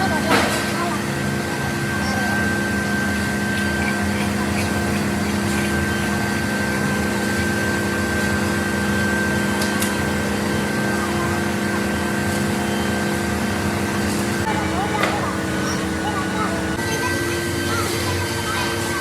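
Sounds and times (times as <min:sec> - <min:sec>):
machine tool motor hum: 0:00.0 - 0:19.0
thin whine: 0:00.0 - 0:19.0.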